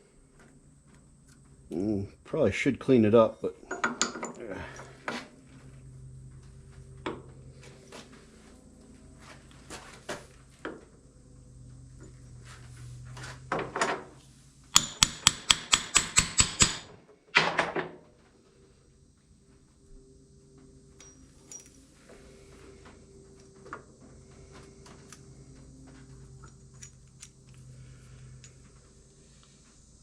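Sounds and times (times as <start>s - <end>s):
low steady hum: 0.0s - 15.5s, 18.0s - 30.0s
metal parts clinking and knocking: 3.6s - 5.0s, 21.0s - 21.8s, 26.4s - 27.7s.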